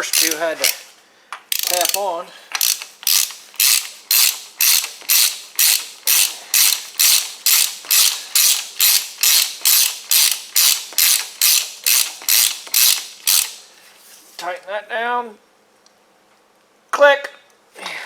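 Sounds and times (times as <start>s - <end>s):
ratchet wrench clicking: 0.0s - 0.8s, 1.5s - 13.7s.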